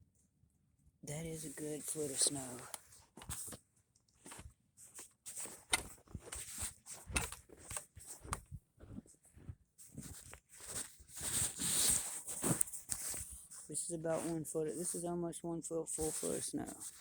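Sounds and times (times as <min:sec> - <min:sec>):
footsteps crunching through snow: 0:04.2 - 0:15.2, 0:16.0 - 0:17.0.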